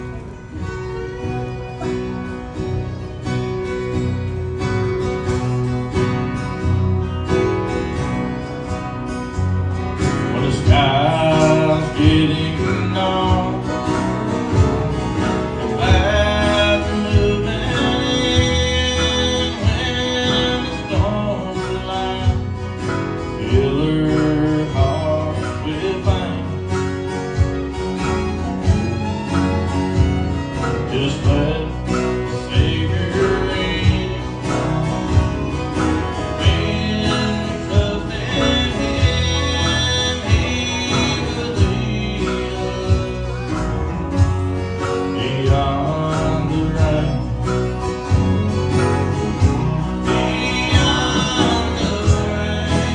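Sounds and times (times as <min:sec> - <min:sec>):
acoustic guitar and strings: 0:00.0 - 0:52.9
person singing: 0:10.0 - 0:27.7, 0:28.4 - 0:52.9.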